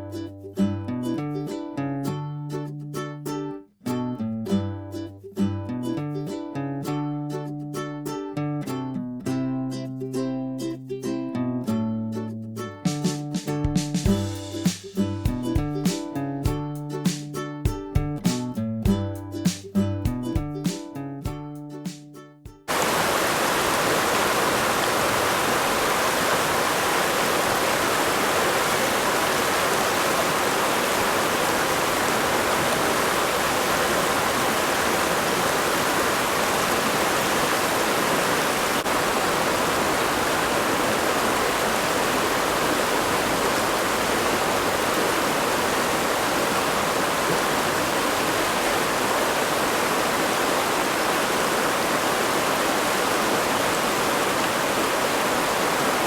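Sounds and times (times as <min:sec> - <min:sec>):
river rushing over stones: 0:22.7 - 0:56.0.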